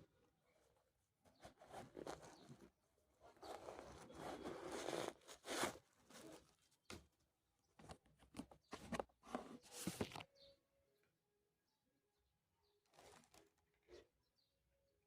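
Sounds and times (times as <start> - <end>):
packaging rustling and scraping: 1.4 - 6.9, 7.8 - 10.3, 12.9 - 13.6.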